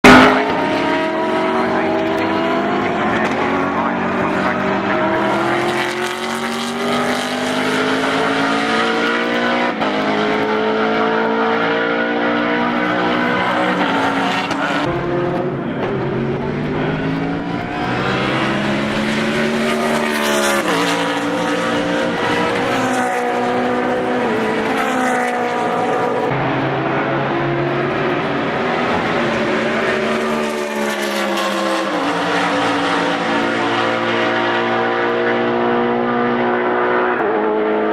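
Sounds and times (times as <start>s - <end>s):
race car engine at high revs: 0.0s - 37.9s.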